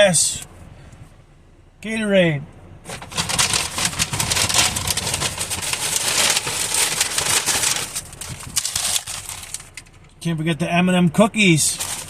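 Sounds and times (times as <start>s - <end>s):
shopping bag rustling: 2.9s - 9.8s, 11.7s - 12.0s.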